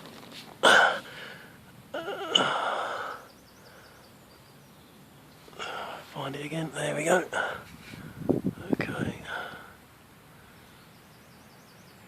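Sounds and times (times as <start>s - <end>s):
man breathing out heavily: 0.6s - 1.6s, 2.3s - 4.1s, 5.6s - 6.1s, 7.3s - 8.3s, 9.1s - 10.6s.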